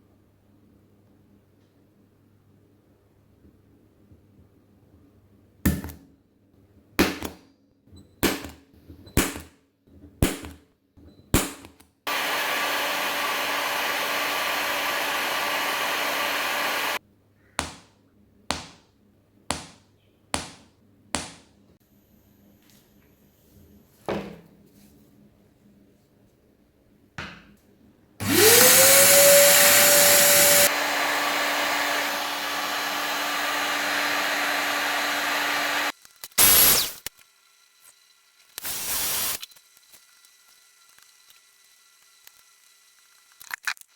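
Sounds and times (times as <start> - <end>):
hair dryer blowing: 12.1 - 17.0, 28.2 - 37.0.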